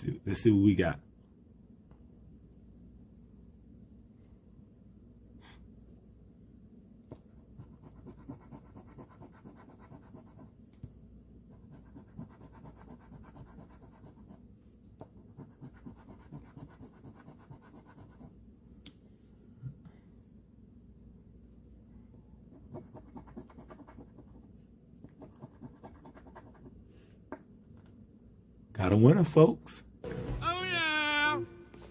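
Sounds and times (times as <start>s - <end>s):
scratching lottery ticket: 7.6s - 10.5s, 11.6s - 14.4s, 15.3s - 18.3s, 25.1s - 26.7s.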